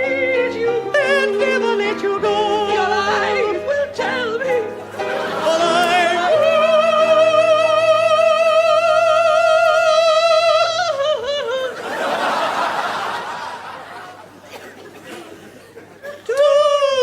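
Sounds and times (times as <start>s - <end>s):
piano accompaniment: 0.0s - 11.0s
man singing falsetto opera: 0.0s - 11.8s, 16.3s - 17.0s
audience laughter: 4.8s - 6.4s, 11.4s - 16.2s.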